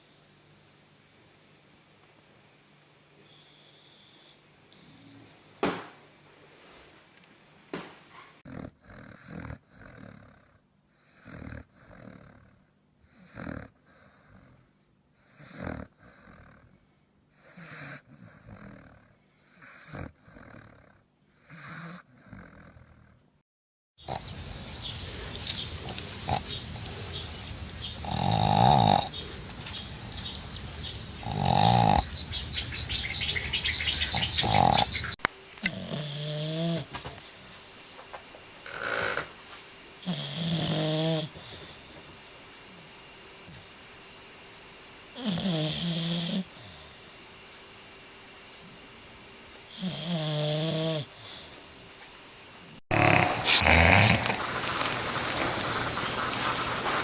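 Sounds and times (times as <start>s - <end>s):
dogs snoring: 8.2s - 23.3s, 24.0s - 37.2s, 38.6s - 39.4s, 40.0s - 42.0s, 45.1s - 47.0s, 49.7s - 51.5s, 52.8s - 57.0s.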